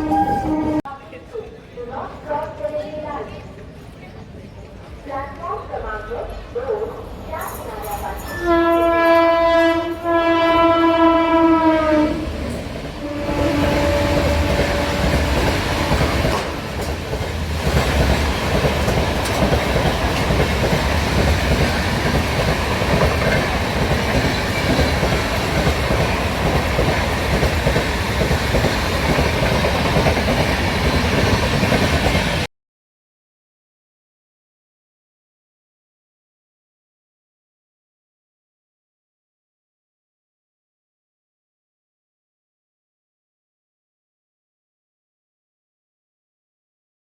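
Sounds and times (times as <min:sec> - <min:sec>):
locomotive horn blast: 0:00.0 - 0:00.8, 0:08.3 - 0:12.2, 0:13.0 - 0:16.5
train wheels rattling on track: 0:11.8 - 0:32.5.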